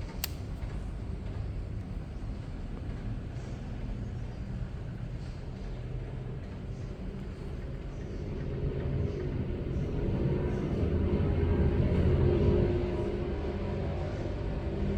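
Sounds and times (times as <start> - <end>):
air conditioner humming: 0.0 - 2.1.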